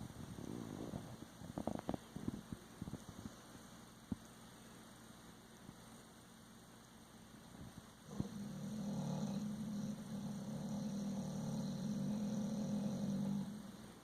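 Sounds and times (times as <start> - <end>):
puppy snoring: 8.0 - 14.0.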